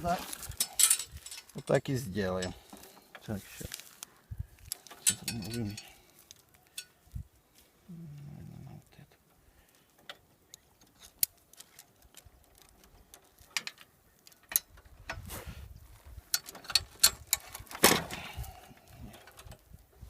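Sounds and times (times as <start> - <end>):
chain and carabiner clinking: 0.2 - 3.2, 4.6 - 7.1.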